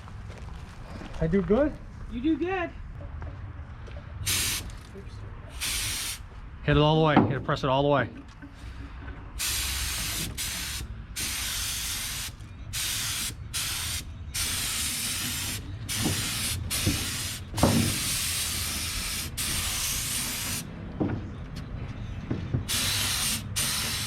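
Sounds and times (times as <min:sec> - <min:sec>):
spray gun hissing: 0:04.3 - 0:04.7, 0:05.6 - 0:06.2, 0:09.4 - 0:20.6, 0:22.7 - 0:24.0.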